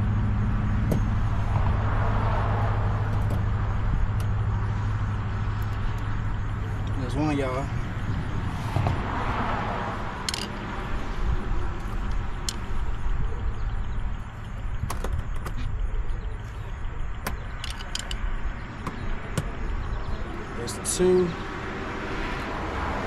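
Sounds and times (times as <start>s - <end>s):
hand tools clicking on plastic clips: 17.6s - 18.2s.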